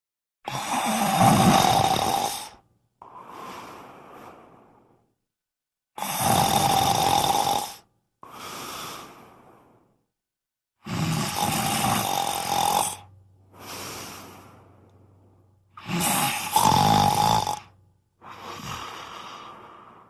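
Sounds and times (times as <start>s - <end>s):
person snoring: 0.5s - 5.0s, 6.0s - 9.9s, 10.8s - 14.9s, 15.7s - 20.0s
quiet breath: 2.4s - 5.2s, 7.7s - 10.1s, 13.0s - 15.8s, 18.2s - 20.0s.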